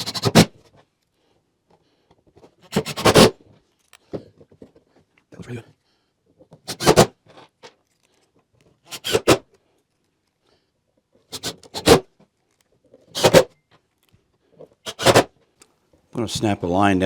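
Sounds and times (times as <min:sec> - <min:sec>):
short scraping rasps: 0:08.8 - 0:09.5, 0:11.3 - 0:13.5, 0:14.8 - 0:15.4.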